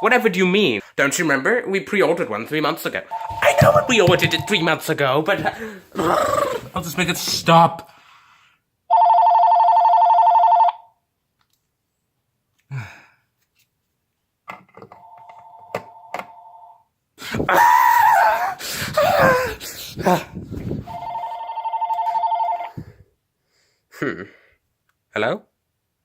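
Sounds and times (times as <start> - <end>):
telephone ringing: 3.1 - 4.8, 8.9 - 10.9, 15.0 - 16.8, 20.9 - 22.8.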